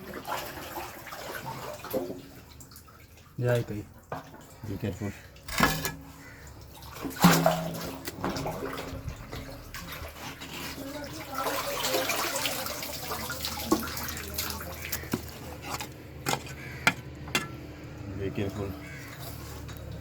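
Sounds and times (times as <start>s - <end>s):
sewer water splashing: 0.0s - 20.0s
scattered clanks: 5.5s - 6.2s.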